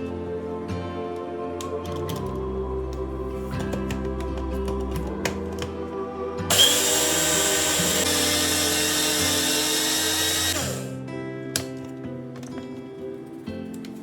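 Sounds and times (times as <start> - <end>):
background music: 0.0 - 14.0
electric mixer grinder running: 6.5 - 10.9.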